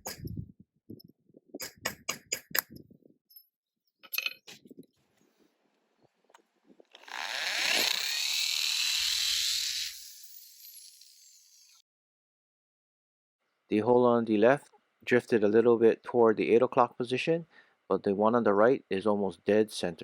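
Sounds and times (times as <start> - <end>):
hammer tapping punch on concrete: 1.6 - 2.8
hammer drill boring into block: 6.9 - 11.8.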